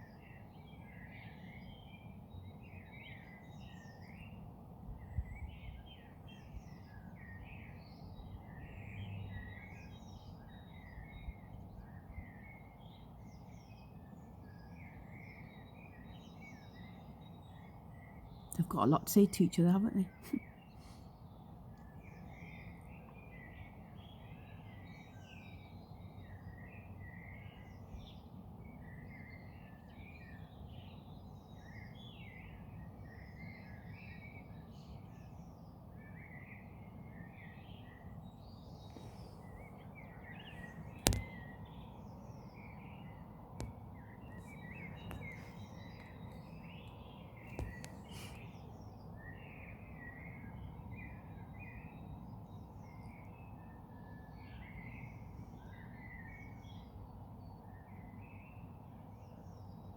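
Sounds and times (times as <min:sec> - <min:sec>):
songbirds chirping and singing: 0:00.0 - 0:59.9
sharp click: 0:40.9 - 0:41.4.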